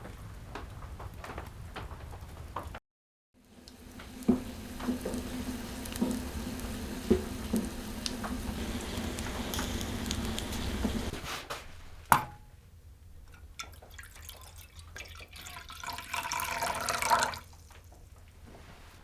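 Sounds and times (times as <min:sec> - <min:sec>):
frying hiss: 0:03.4 - 0:12.2
liquid pouring: 0:03.5 - 0:11.3, 0:13.6 - 0:17.8.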